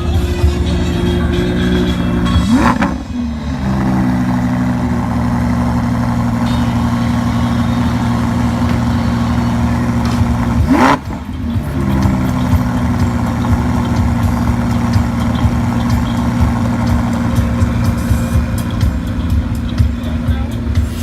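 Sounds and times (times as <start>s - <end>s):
sports car engine idling and revving: 0.0s - 21.0s.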